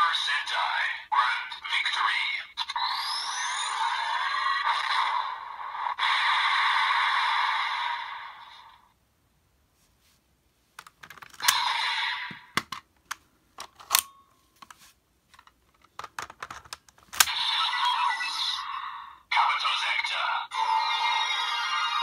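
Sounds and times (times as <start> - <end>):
toy electronic sound effects: 1.8 - 8.1, 11.4 - 12.5, 17.2 - 22.0
plastic toy clicks and snaps: 12.6 - 14.1, 15.4 - 17.4.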